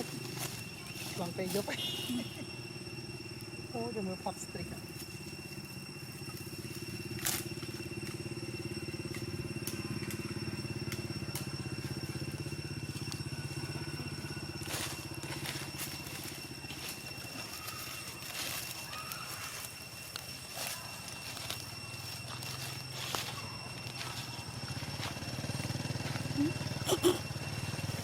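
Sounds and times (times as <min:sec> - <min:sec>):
small engine running: 0:00.0 - 0:28.0.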